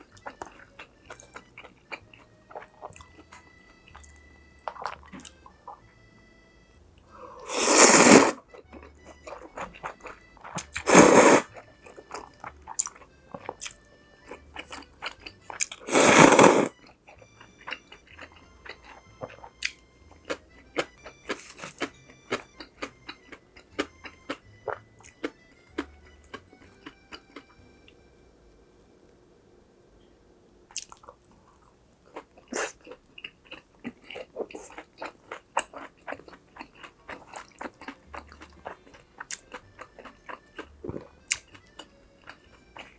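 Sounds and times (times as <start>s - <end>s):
chewing: 0.0s - 5.9s, 7.0s - 27.6s, 30.7s - 42.9s
slurping noodles: 7.4s - 8.4s, 10.6s - 11.5s, 15.8s - 16.7s.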